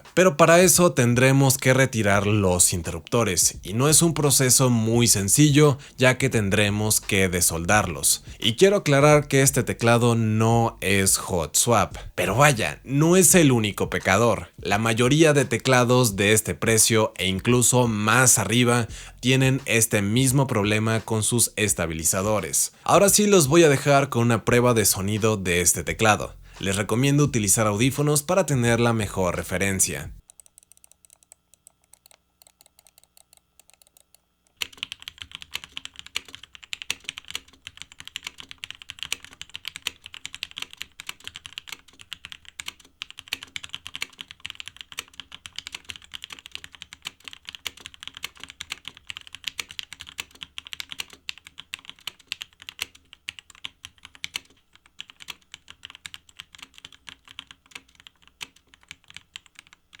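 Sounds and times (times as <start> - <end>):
mechanical keyboard typing: 30.2 - 60.0.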